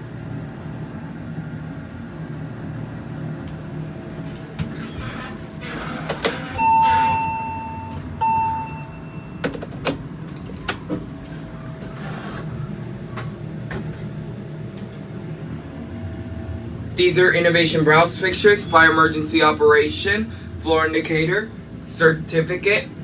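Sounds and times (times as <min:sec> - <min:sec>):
elevator hum: 0:00.0 - 0:23.0
elevator two-tone chime: 0:06.6 - 0:09.6.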